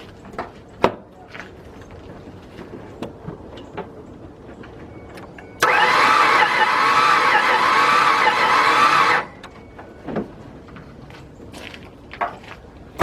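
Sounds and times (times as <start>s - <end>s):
engine cranking on starter: 5.6s - 9.5s.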